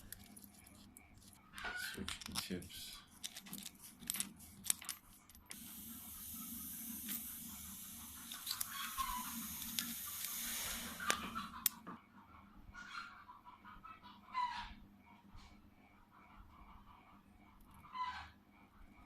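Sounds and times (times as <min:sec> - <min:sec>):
aerosol can spraying: 0:05.6 - 0:11.2.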